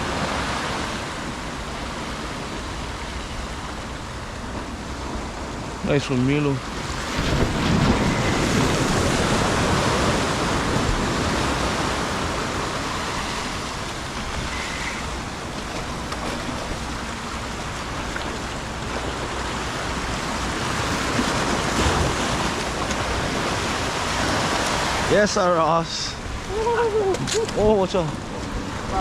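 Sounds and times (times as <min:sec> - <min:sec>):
ocean waves washing ashore: 0:00.0 - 0:29.0.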